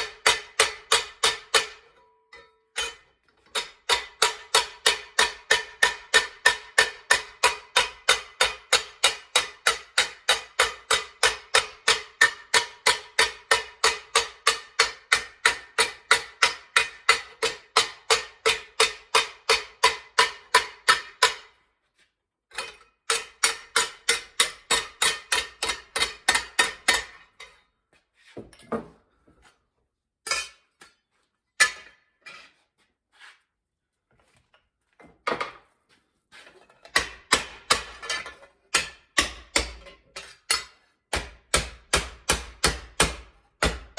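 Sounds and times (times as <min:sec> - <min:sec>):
hammer striking sheet metal: 0:03.6 - 0:21.5, 0:37.0 - 0:38.0, 0:38.8 - 0:39.8, 0:40.5 - 0:43.9.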